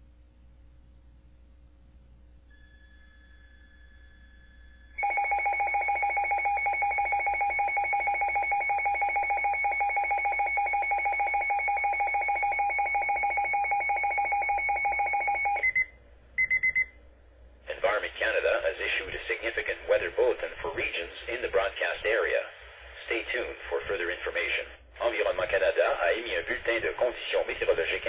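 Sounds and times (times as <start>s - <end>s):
pulsing two-tone alarm: 2.5s - 16.9s.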